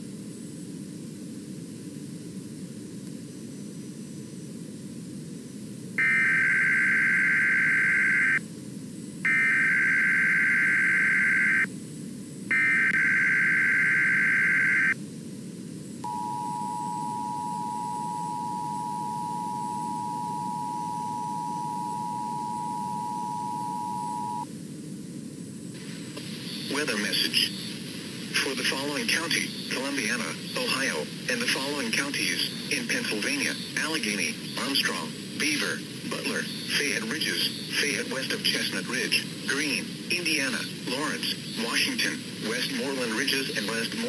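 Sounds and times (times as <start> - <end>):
buzzing digital data bursts: 6.0 - 8.4, 9.3 - 11.7, 12.5 - 15.0
two-note attention tone: 16.1 - 24.4
radio hiss: 25.4 - 44.0.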